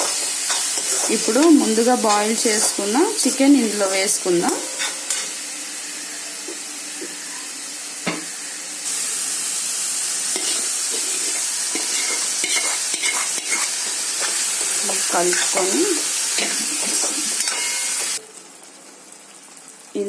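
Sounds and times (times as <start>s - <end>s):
spoon scraping a pan: 0.0s - 3.3s, 4.6s - 5.4s, 10.3s - 18.2s
masala sizzling in hot oil: 0.0s - 20.0s.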